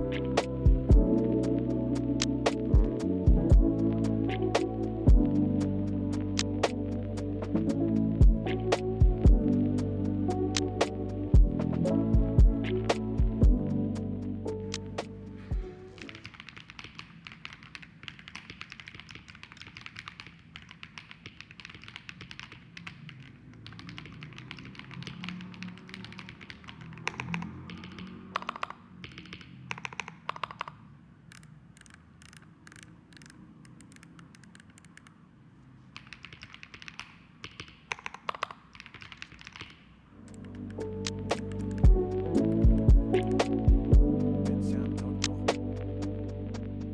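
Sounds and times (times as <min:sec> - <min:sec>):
mechanical keyboard typing: 0:14.5 - 0:35.2, 0:35.9 - 0:43.6.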